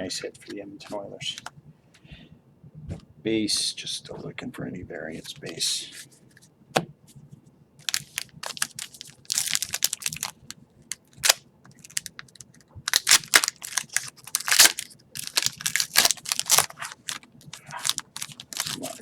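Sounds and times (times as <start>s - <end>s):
foil wrapper crinkling and tearing: 7.8s - 19.0s.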